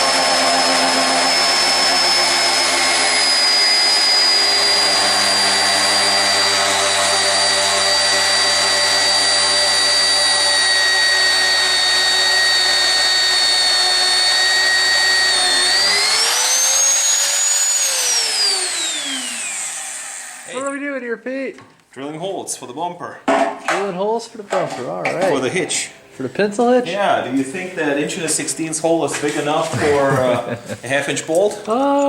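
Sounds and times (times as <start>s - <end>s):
electric drill whining: 0.0s - 20.7s.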